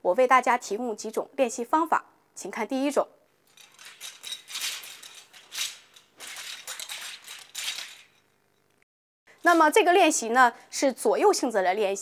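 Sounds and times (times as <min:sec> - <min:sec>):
clothing rustle: 0:03.4 - 0:08.2.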